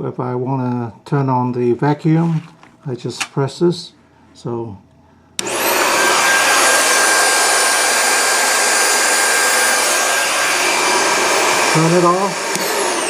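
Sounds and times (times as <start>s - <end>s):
vacuum cleaner motor whine: 5.4s - 13.0s.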